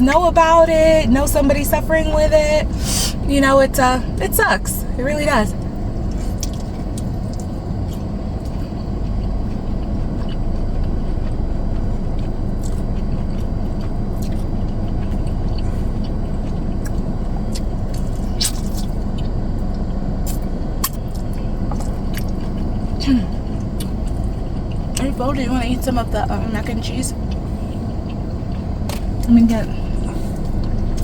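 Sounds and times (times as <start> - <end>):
car cabin rumble: 0.0 - 31.0
person eating crunchy food: 5.6 - 25.0.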